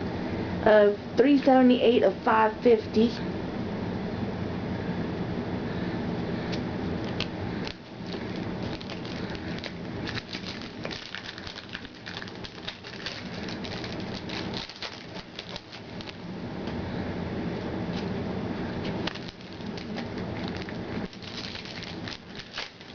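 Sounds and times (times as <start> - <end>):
steady low hum: 0.0 - 22.9.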